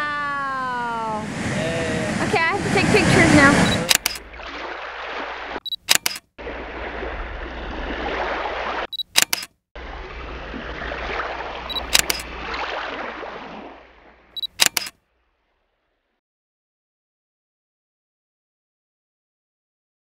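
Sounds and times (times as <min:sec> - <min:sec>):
camera focus beep: 0:03.6 - 0:04.3, 0:05.6 - 0:06.2, 0:08.9 - 0:09.5, 0:11.7 - 0:12.3, 0:14.4 - 0:15.0
camera shutter clicks: 0:03.7 - 0:04.3, 0:05.7 - 0:06.3, 0:09.0 - 0:09.6, 0:11.7 - 0:12.3, 0:14.4 - 0:15.0.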